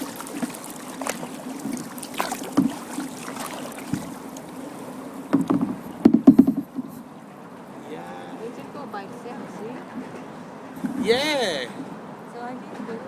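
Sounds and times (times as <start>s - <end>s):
paddles splashing in water: 0.0s - 8.6s.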